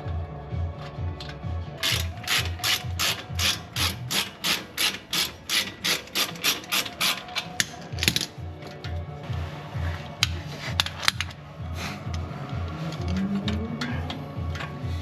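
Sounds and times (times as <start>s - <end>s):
ratchet wrench rasping: 1.8s - 8.3s.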